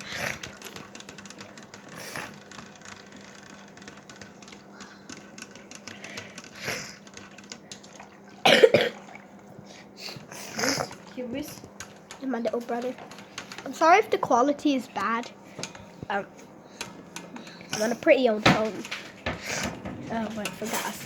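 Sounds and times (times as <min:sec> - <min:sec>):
person coughing: 0:08.4 - 0:09.0.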